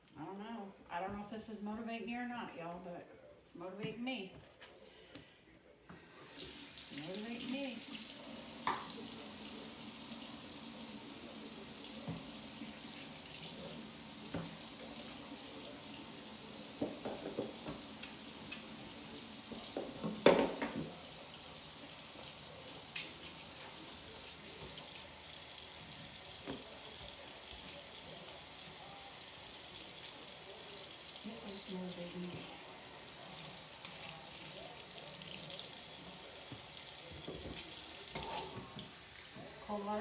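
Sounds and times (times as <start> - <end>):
faucet running into sink: 6.2 - 40.0
dishes clattering: 8.6 - 9.2, 16.7 - 18.1, 19.5 - 21.1, 37.2 - 38.9
dishes clinking: 8.6 - 9.2, 19.5 - 21.0, 37.2 - 38.9.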